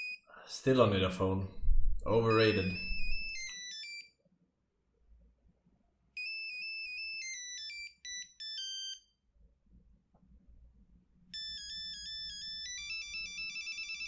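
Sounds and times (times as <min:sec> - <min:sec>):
monophonic ringtone beeps: 0:00.0 - 0:00.3, 0:02.3 - 0:04.2, 0:06.2 - 0:09.2, 0:11.3 - 0:14.0.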